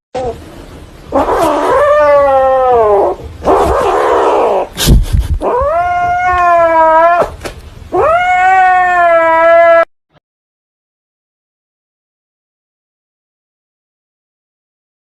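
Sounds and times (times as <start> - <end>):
pet howling: 1.1 - 4.7, 5.4 - 9.9.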